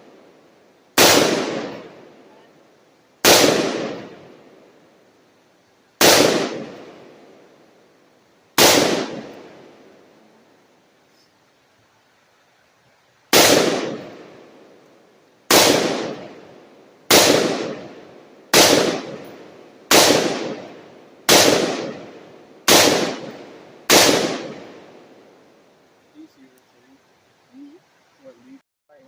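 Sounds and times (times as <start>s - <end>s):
gunshots with long echo: 1.0s - 2.4s, 3.2s - 5.0s, 6.0s - 7.8s, 8.6s - 10.1s, 13.3s - 14.8s, 15.5s - 25.6s.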